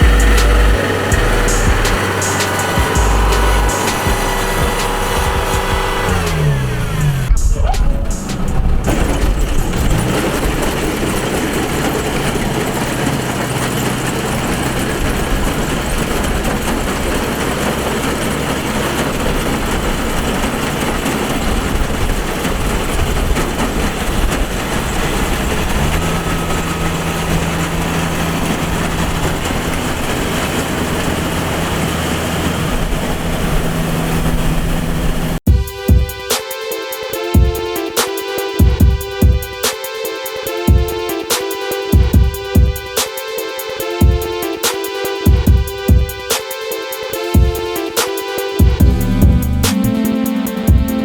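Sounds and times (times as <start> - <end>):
combine harvester running: 0.0 - 35.4, 37.2 - 51.0
steady hum: 0.0 - 35.5, 47.2 - 51.0.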